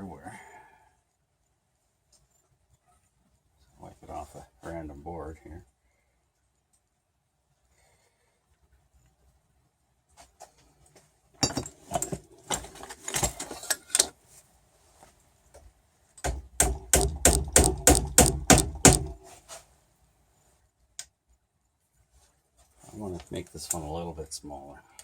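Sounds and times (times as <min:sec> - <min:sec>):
tapping wooden plugs into holes: 0:16.2 - 0:19.2.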